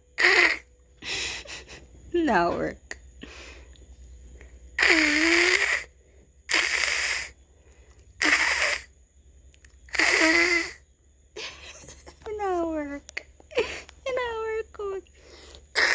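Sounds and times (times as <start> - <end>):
person imitating cat hiss: 0.2 - 0.7, 4.8 - 7.4, 8.2 - 8.9, 9.9 - 10.8.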